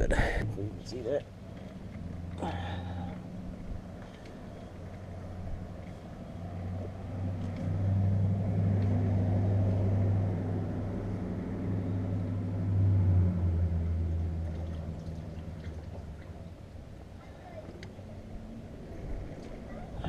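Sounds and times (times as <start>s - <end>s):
vehicle engine droning past: 1.4s - 17.0s.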